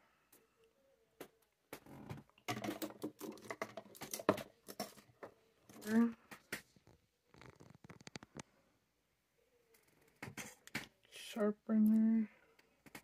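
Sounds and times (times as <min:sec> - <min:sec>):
plastic containers clicking and rattling: 0:01.8 - 0:06.6.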